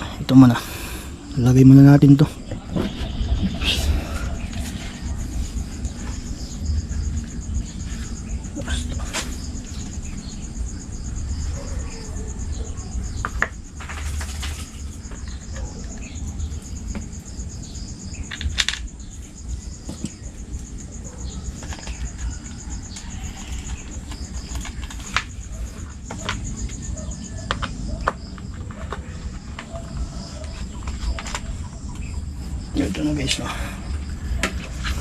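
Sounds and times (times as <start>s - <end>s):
low rumble: 0.0s - 13.8s
steady high whine: 0.0s - 35.0s
rustling: 13.8s - 15.9s.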